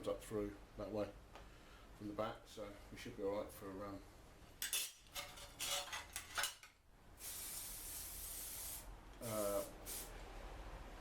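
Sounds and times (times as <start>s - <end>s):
aerosol spray hissing: 7.2s - 10.1s.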